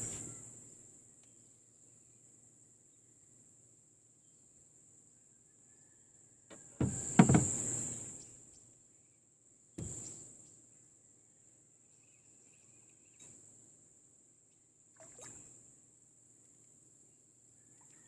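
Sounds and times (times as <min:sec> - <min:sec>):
insects droning: 0:00.0 - 0:08.3, 0:09.8 - 0:14.4
hard knocks and clatters: 0:06.8 - 0:07.8.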